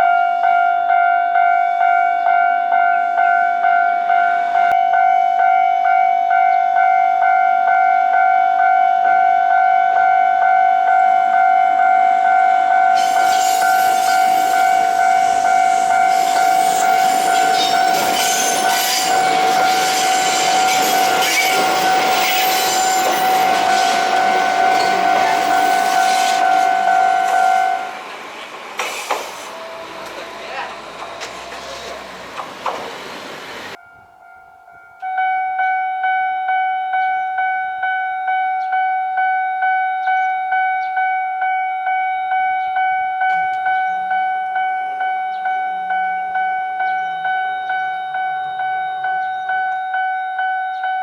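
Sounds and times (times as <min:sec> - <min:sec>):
level-crossing warning bell: 0:00.0 - 0:51.0
train wheels rattling over rails: 0:13.0 - 0:33.8.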